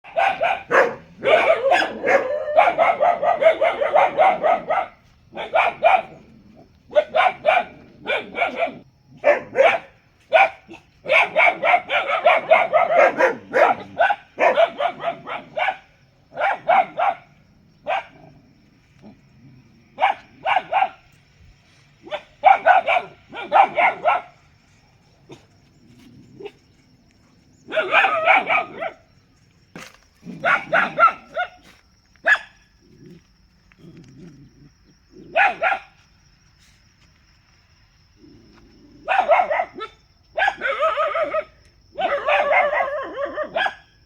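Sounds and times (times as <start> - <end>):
dog barking: 0.0 - 6.3, 6.9 - 18.4, 20.0 - 21.0, 22.0 - 24.4, 27.6 - 29.1, 30.3 - 32.6, 35.3 - 36.0, 39.0 - 43.9.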